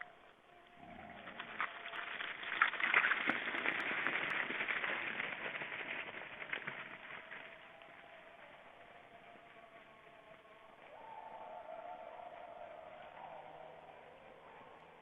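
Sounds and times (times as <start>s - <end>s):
wild boars crunching and trampling: 0.0s - 10.1s.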